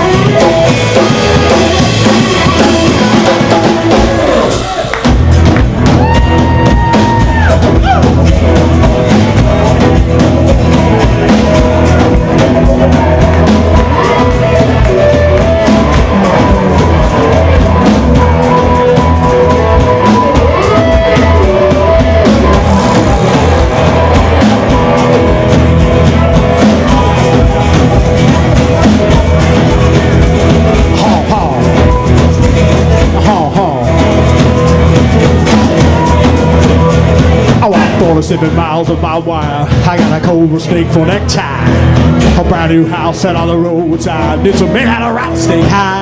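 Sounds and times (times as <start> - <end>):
lead line bending notes: 0.0 - 38.9
bass guitar: 0.0 - 46.0
drum kit beat: 0.0 - 46.0.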